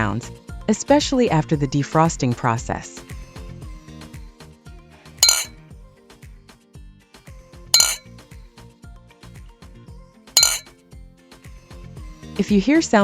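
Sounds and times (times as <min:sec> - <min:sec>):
background music with steady beat: 0:05.2 - 0:05.5, 0:07.8 - 0:08.0, 0:10.4 - 0:10.7
glass bottles clinking: 0:05.2 - 0:05.5, 0:07.8 - 0:08.0, 0:10.4 - 0:10.7.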